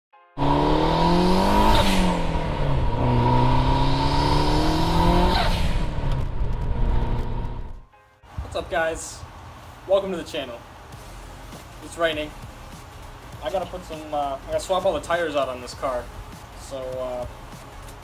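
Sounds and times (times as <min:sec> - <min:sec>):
car engine accelerating hard: 0:00.4 - 0:07.8.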